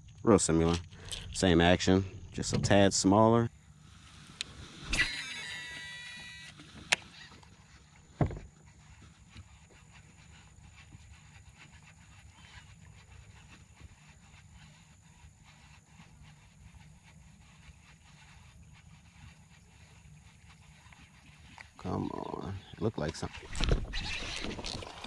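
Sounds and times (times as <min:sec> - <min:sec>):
low steady rumble: 0:00.0 - 0:04.9
thump in a kayak: 0:08.1 - 0:08.5, 0:23.5 - 0:24.8.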